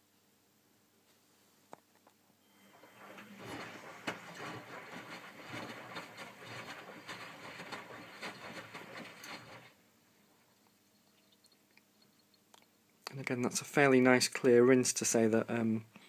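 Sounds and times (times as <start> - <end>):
laundry sloshing in water: 2.6 - 9.8
washing machine drum turning: 2.6 - 9.8.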